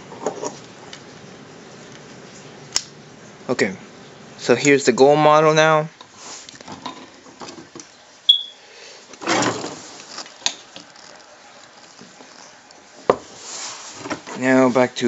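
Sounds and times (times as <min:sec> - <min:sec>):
plastic parts rustling: 0:09.2 - 0:12.6.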